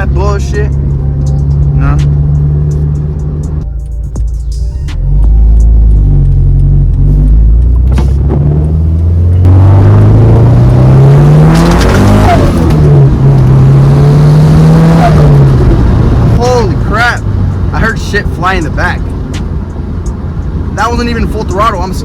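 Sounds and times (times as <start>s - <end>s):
car engine accelerating hard: 4.9s - 21.7s.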